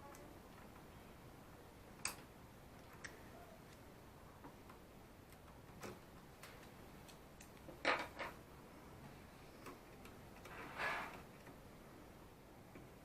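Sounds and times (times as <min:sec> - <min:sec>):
faint clicks and light taps: 0:02.0 - 0:08.3.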